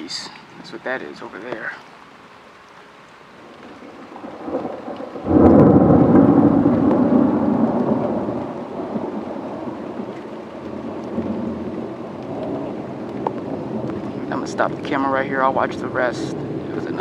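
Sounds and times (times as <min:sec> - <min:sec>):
thunder crack and rumble: 0:03.6 - 0:17.0.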